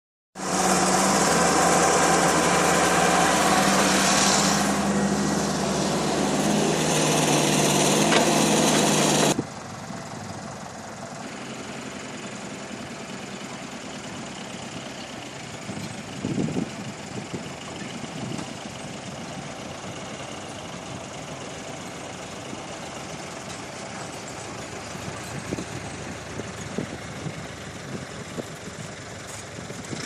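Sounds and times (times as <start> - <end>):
motor running steadily: 4.2 - 9.4.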